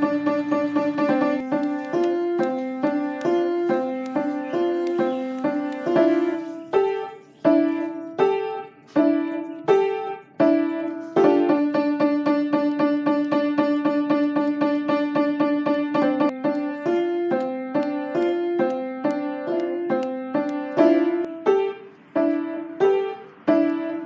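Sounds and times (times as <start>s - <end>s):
piano-like keyboard notes: 0.0s - 24.0s.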